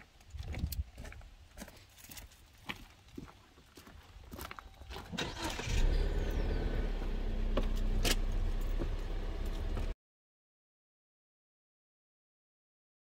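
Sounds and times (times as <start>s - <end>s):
car engine starting and idling: 5.1s - 10.0s.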